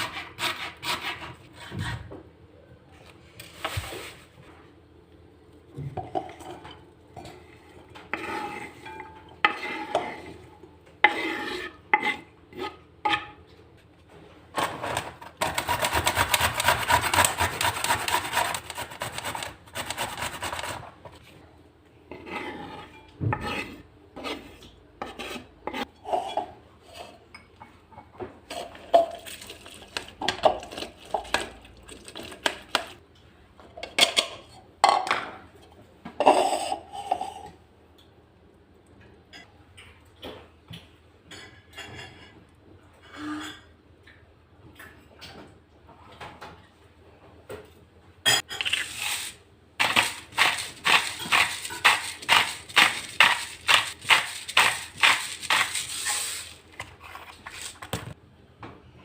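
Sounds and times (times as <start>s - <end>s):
dishes and utensils clinking: 8.2s - 10.1s, 41.3s - 42.4s
scraping and rubbing strokes: 48.7s - 57.8s.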